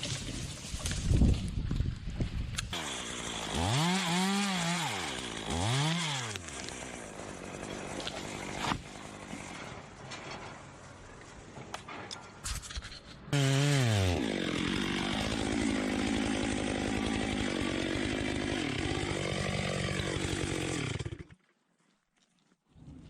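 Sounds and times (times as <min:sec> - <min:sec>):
chainsaw cutting wood: 0:02.6 - 0:09.8, 0:13.3 - 0:21.4.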